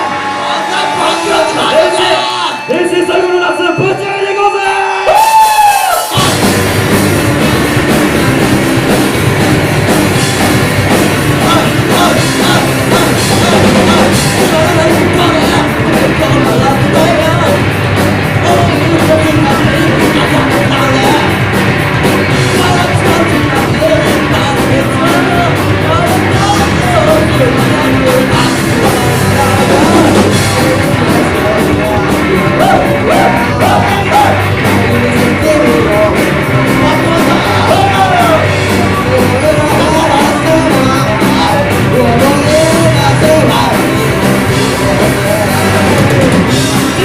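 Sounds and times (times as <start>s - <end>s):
rock band playing live: 0.0s - 47.0s
person singing: 11.3s - 17.7s, 18.3s - 21.5s, 22.4s - 47.0s.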